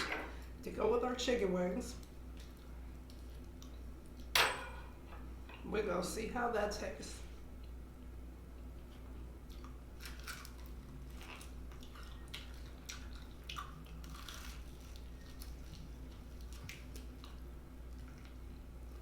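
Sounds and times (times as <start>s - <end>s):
steady low hum: 0.0s - 19.0s
crunching and chewing food: 2.0s - 4.3s, 7.6s - 19.0s.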